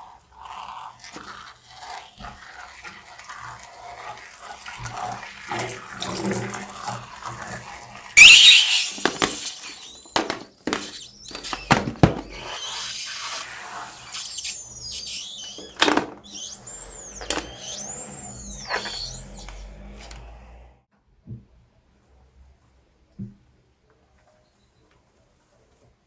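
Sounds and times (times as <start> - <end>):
loud hissing burst: 8.2 - 9.5
rubber balloon squeaking: 8.2 - 20.6.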